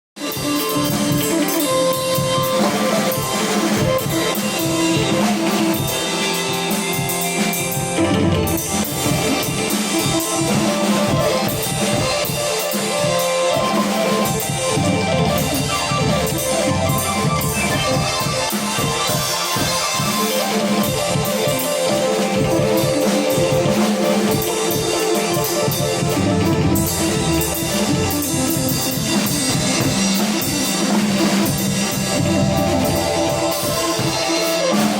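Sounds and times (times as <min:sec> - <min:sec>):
drum kit steady beat: 0:00.2 - 0:34.9
plucked guitar notes: 0:08.0 - 0:12.2, 0:32.1 - 0:34.9.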